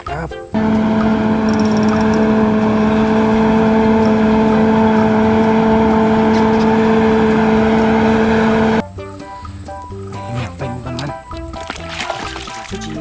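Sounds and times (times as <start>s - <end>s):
motor running with rushing hiss: 0.6s - 8.8s.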